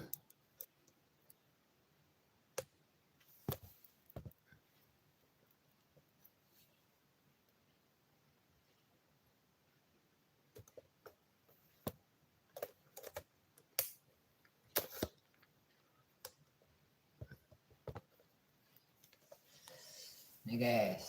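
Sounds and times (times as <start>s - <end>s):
irregular clicks and taps: 10.5s - 19.4s.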